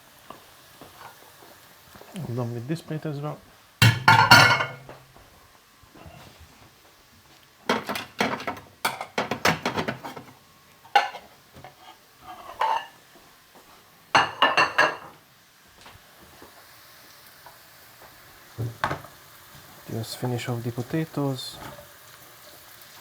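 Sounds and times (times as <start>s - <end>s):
dishes and pans clattering: 3.8s - 5.0s, 7.6s - 13.0s, 14.1s - 15.2s, 18.6s - 19.1s.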